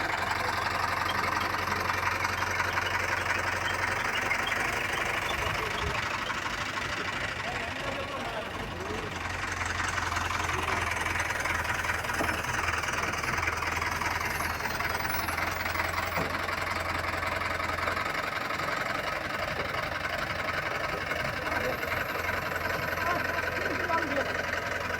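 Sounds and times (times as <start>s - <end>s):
construction machinery running: 0.0s - 24.9s.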